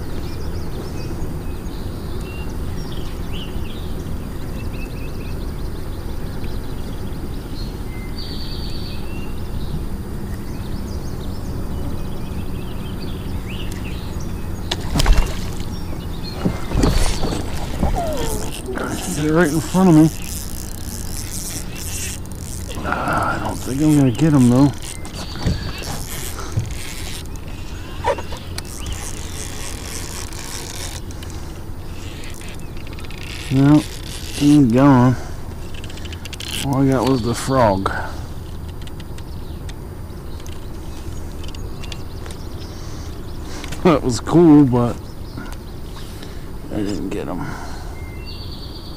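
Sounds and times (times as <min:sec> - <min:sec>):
low outdoor rumble: 0:00.0 - 0:48.8
small birds chirping: 0:00.0 - 0:48.9
fishing reel ratcheting: 0:17.0 - 0:27.4, 0:28.6 - 0:34.6.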